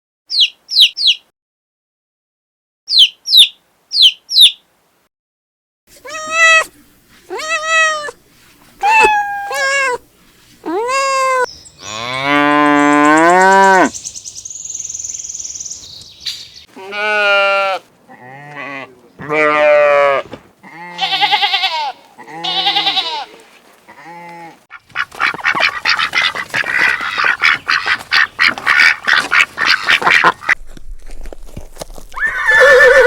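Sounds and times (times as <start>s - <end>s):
cat meowing: 6.0s - 6.7s, 7.3s - 8.2s, 8.8s - 10.0s, 10.6s - 11.5s
cow mooing: 11.8s - 13.9s, 16.8s - 23.3s.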